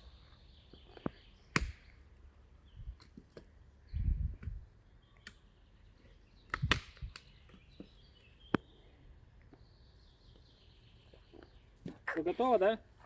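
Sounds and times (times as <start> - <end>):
faint outdoor background: 0.0 - 13.0.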